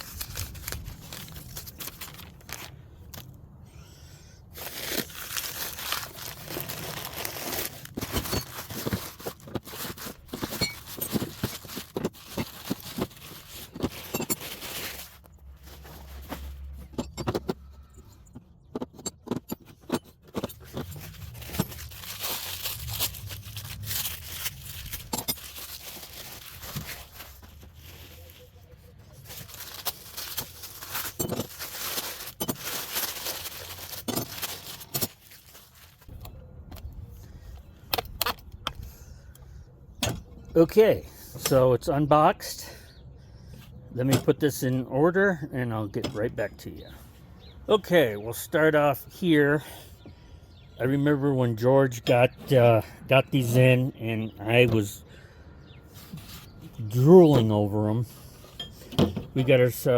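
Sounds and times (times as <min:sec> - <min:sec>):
paper crinkling and rustling: 0:00.0 - 0:03.3, 0:04.5 - 0:16.9, 0:20.2 - 0:36.3.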